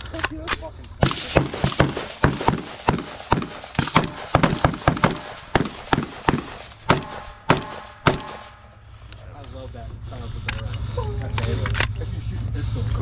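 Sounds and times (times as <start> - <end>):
gunshots: 1.0 - 8.8.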